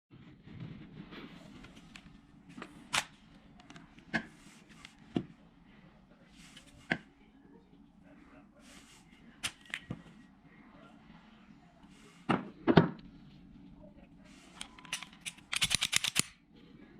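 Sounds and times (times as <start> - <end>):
pistol mechanical clicks: 14.9 - 16.4.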